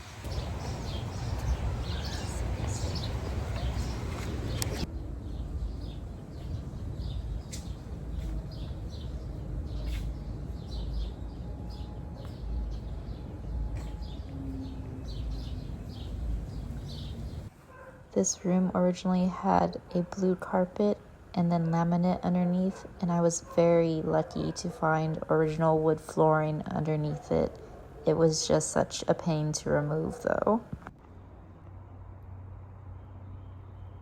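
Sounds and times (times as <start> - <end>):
low outdoor rumble: 0.0 - 17.5
birds chirping: 0.0 - 20.1.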